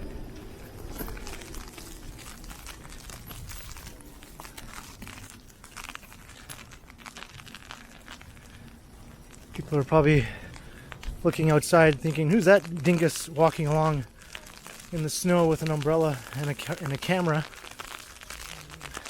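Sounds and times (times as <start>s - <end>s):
low wind rumble: 0.0s - 5.6s
ice pellets hitting an umbrella: 0.6s - 8.7s, 9.3s - 19.0s.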